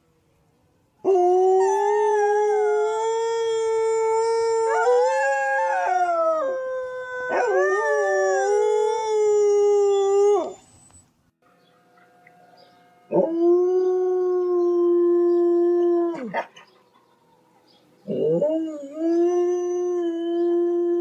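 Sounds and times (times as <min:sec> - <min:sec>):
dog howling: 0:01.1 - 0:10.6.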